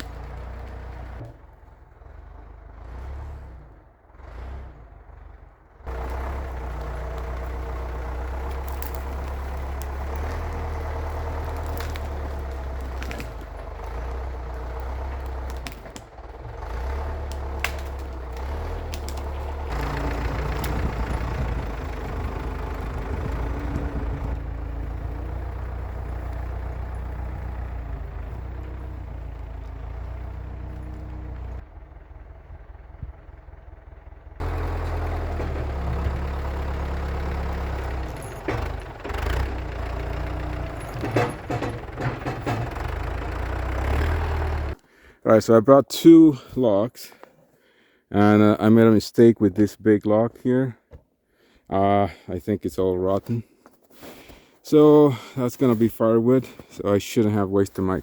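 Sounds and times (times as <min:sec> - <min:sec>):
diesel engine running: 0:00.0 - 0:45.2
clanks and rattles: 0:05.9 - 0:31.6, 0:34.4 - 0:44.8.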